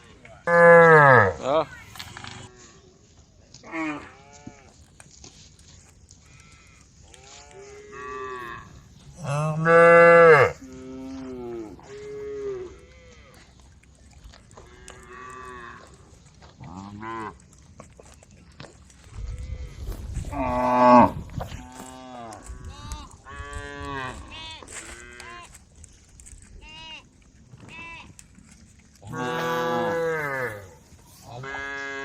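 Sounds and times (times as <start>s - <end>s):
cows mooing: 0.5s - 1.4s, 6.4s - 13.5s, 14.6s - 16.0s, 16.6s - 17.4s, 19.3s - 25.4s, 29.0s - 32.0s.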